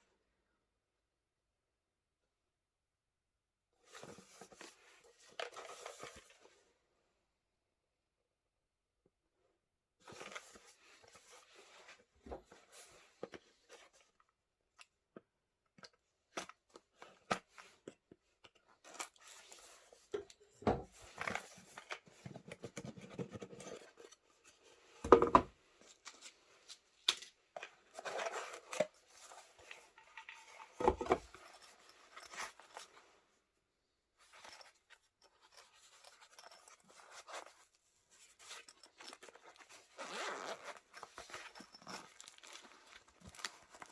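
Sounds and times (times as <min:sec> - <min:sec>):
packaging rustling: 0:41.6 - 0:43.9.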